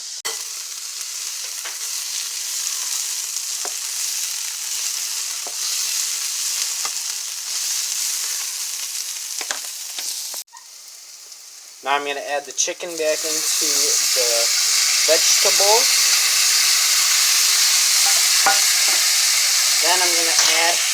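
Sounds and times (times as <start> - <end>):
vegetables sizzling in oil: 0.0 - 20.9
utensil knocking in pan: 18.0 - 19.1.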